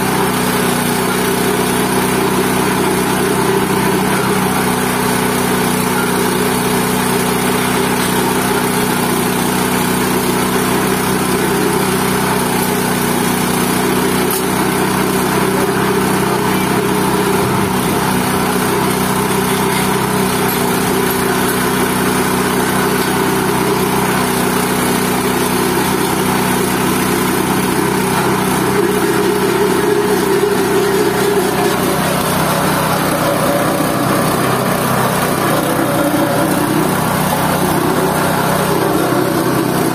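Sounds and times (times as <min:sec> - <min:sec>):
grinding drum churning: 0:00.0 - 0:39.9
motor humming: 0:27.0 - 0:39.9.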